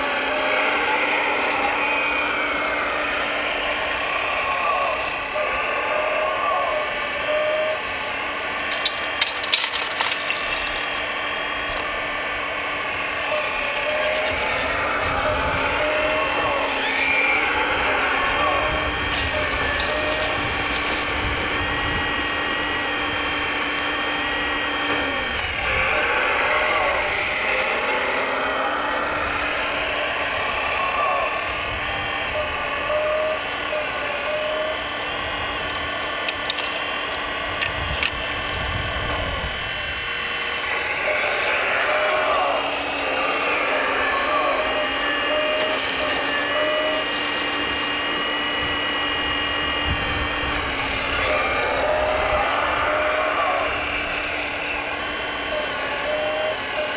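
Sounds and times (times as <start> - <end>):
electric motors whining: 0.0 - 56.9
sharp clicks: 3.6 - 21.4, 33.0 - 39.2.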